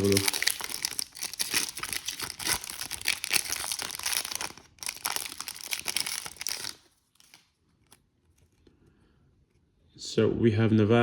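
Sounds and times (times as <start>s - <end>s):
card pack wrapper crinkling and tearing: 0.0s - 8.5s.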